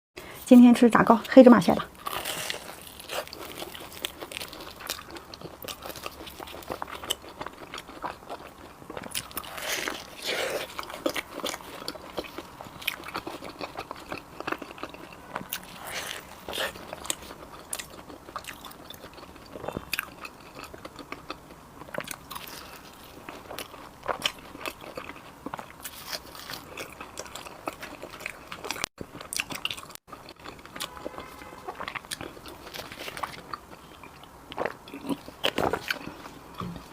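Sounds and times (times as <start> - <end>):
mouth chewing: 1.8 - 36.9
crisp crunches of fried crust: 2.0 - 21.3.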